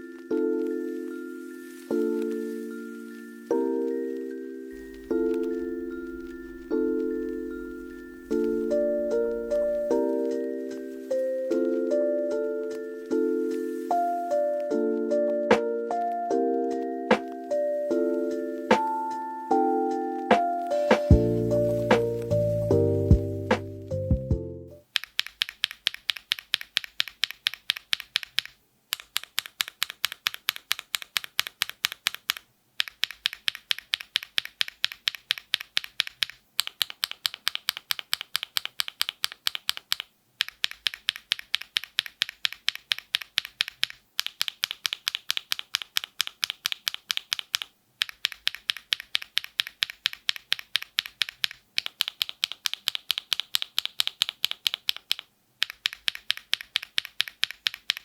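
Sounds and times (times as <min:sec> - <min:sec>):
typing on mechanical keyboard: 0:04.8 - 0:10.0, 0:24.8 - 0:58.0.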